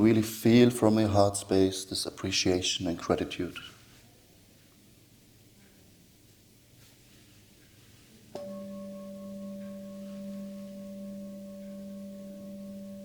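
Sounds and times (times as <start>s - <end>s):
singing bowl ringing: 8.4s - 13.0s.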